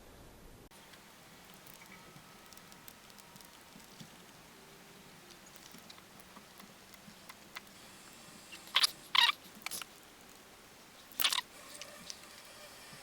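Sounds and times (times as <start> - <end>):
crunchy rasps: 0.8 - 13.0
small parts clicking: 0.9 - 4.4, 11.1 - 12.5.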